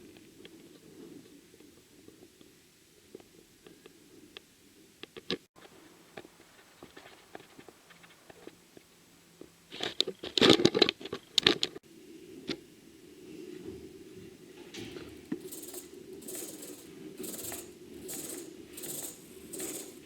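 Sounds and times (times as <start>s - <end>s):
rattling clatter: 14.6s - 20.0s.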